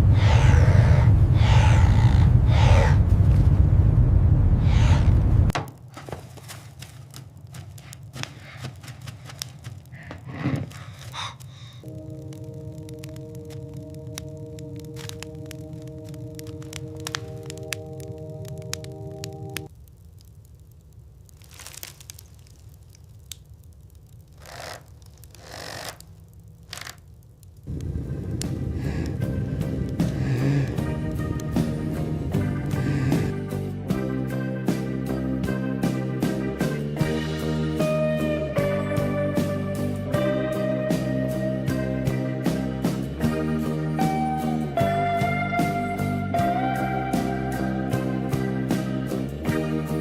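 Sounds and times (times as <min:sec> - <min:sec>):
loud low rumble: 0:00.0 - 0:05.6, 0:27.7 - 0:34.3
crisp crunching clicks: 0:05.9 - 0:27.9
crunching scrapes in snow: 0:21.4 - 0:22.6.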